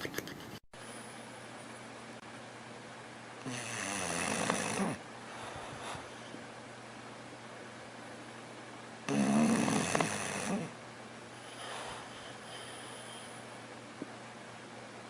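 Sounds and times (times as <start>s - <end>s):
dog snoring: 3.4s - 5.0s, 9.1s - 10.8s.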